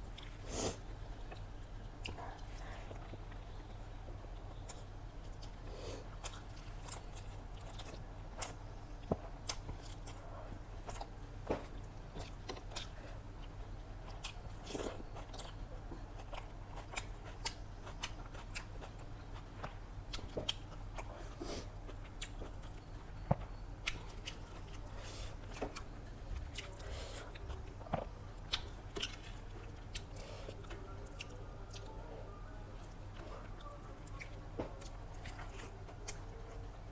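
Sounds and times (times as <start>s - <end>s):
person chewing food: 0.0s - 32.0s, 32.7s - 36.9s
low steady hum: 0.0s - 36.9s
food crunching: 21.8s - 32.0s.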